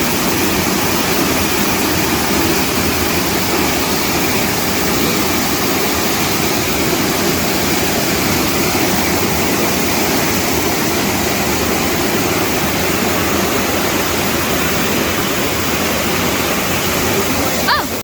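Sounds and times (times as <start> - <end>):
waterfall rushing: 0.0 - 18.0.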